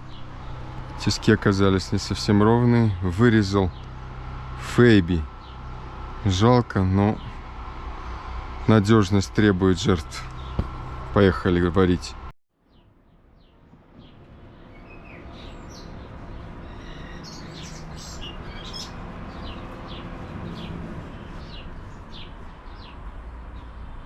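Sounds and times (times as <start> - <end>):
small birds chirping: 10.0 - 11.2, 12.7 - 23.9.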